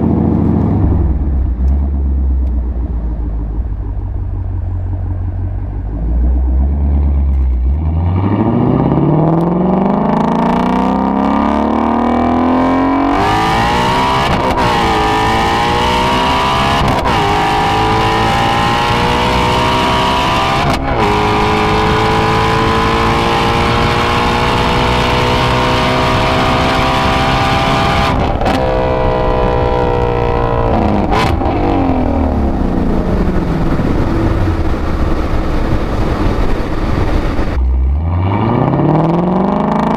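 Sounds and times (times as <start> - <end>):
car exhaust revving: 0.0 - 39.9.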